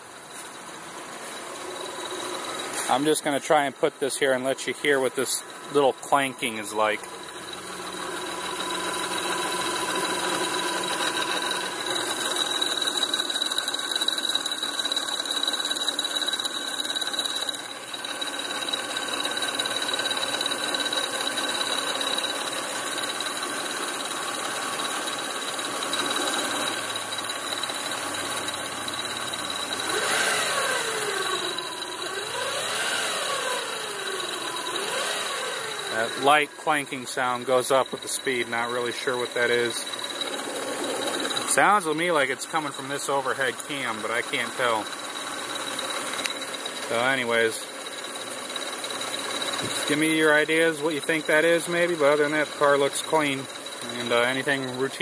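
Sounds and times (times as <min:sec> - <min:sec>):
car engine running: 0:00.0 - 0:55.0
high-pitched engine whine: 0:00.0 - 0:55.0.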